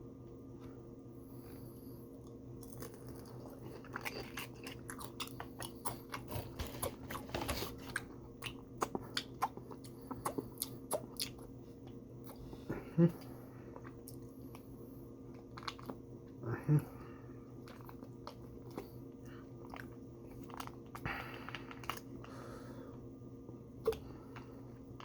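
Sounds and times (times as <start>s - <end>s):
person chewing crunchy food: 2.2s - 16.8s, 17.5s - 22.7s.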